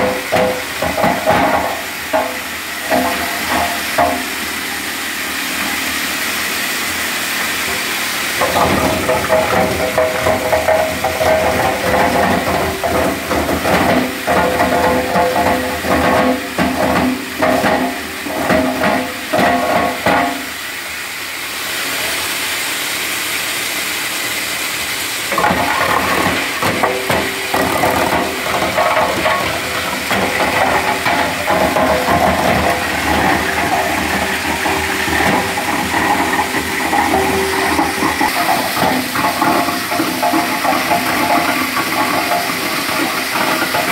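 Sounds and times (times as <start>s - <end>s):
wood crusher grinding wood: 0.0s - 20.9s, 24.4s - 43.9s.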